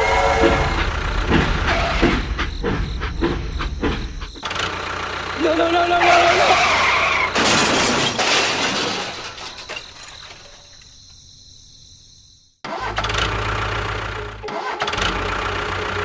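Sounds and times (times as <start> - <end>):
loud rushing noise: 0.0 - 4.4
engine humming: 0.0 - 8.2, 12.8 - 16.0.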